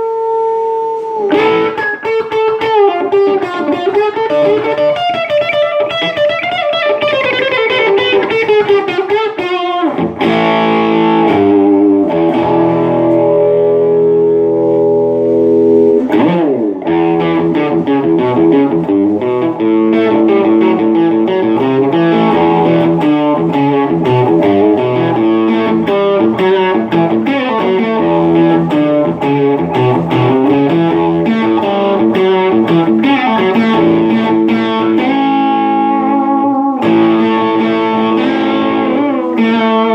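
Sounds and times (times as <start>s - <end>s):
distorted electric guitar: 0.0s - 39.9s.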